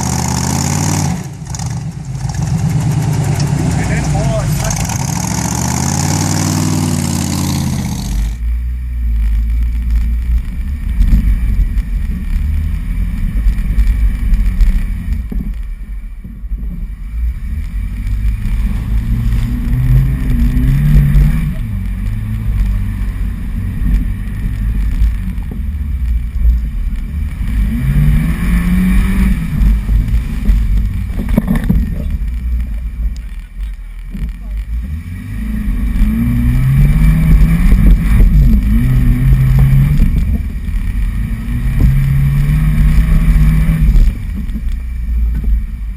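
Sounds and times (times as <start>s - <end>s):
off-road vehicle engine revving: 0.0s - 15.5s, 17.0s - 45.9s
higher engine sound: 0.0s - 33.8s.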